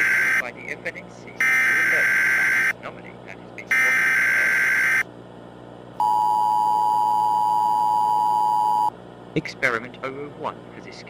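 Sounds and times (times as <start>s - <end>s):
buzzy warbling data tone: 0.0s - 0.4s, 1.4s - 2.8s, 3.7s - 5.0s
steady two-tone attention signal: 3.7s - 5.0s, 6.0s - 8.9s.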